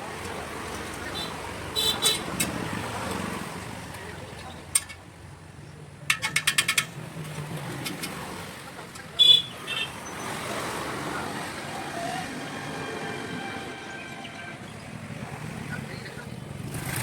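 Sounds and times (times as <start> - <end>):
traffic noise: 0.0 - 17.0
vehicle horn toots: 1.2 - 2.3, 9.2 - 10.0.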